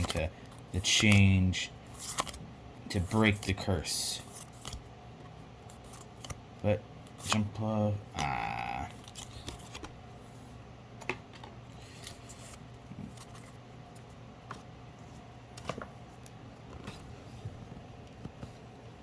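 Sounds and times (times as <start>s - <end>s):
cards rustling: 0.0s - 4.9s, 5.6s - 6.4s, 8.9s - 10.0s
low steady hum: 0.0s - 19.0s.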